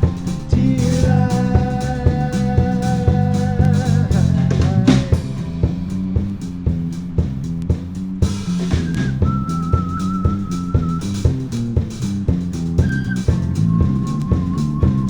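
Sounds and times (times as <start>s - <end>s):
person singing: 0.0s - 5.7s
rock band playing: 0.0s - 15.0s.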